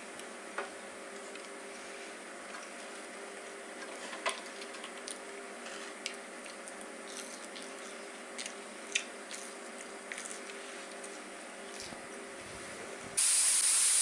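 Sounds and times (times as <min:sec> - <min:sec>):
person chewing food: 0:04.3 - 0:13.0.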